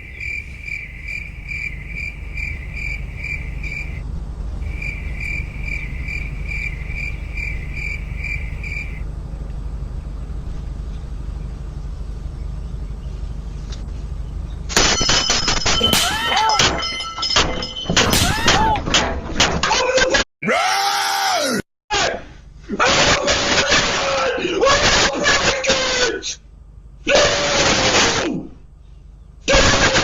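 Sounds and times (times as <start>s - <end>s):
cricket chirping: 0.0s - 4.0s, 4.6s - 9.0s
steady low rumble: 0.0s - 14.7s.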